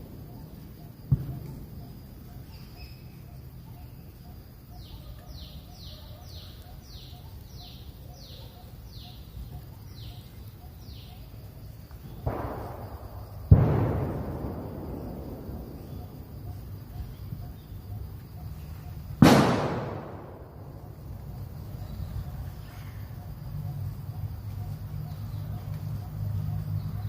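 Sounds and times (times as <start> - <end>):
firecrackers bursting: 11.9 - 17.4, 18.2 - 22.2.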